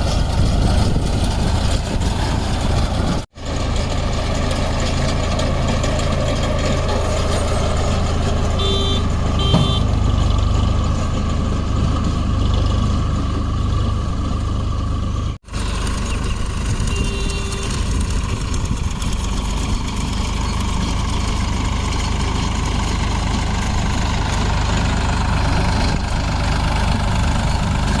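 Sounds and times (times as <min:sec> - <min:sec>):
tractor engine running: 0:00.0 - 0:28.0
short high beeps: 0:08.6 - 0:09.9, 0:16.9 - 0:17.8.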